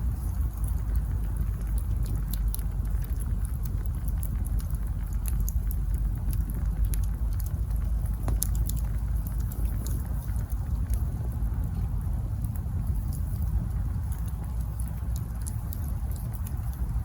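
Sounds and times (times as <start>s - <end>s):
campfire rumble: 0.0s - 17.0s
fire crackling and popping: 0.0s - 17.0s.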